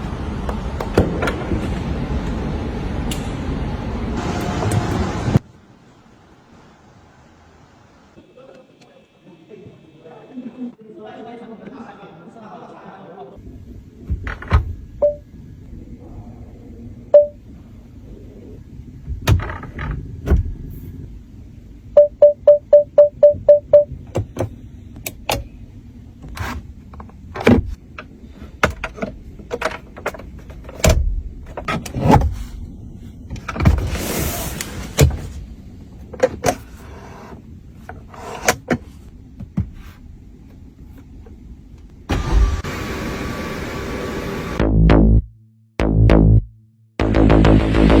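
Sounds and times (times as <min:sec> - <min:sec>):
short beeps: 0:17.2 - 0:17.4, 0:22.0 - 0:23.9
car doors and controls clicking: 0:22.5 - 0:25.5.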